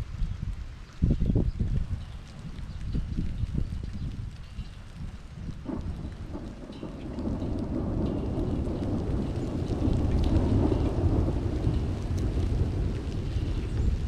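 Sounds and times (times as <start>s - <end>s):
faint light ticks: 11.6s - 14.0s.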